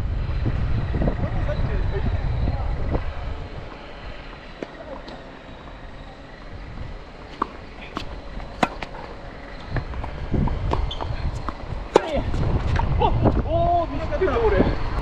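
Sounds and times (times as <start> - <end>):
wind rumbling on microphone: 0.0 - 15.0
tennis balls struck and bouncing: 4.5 - 5.3, 7.0 - 12.9.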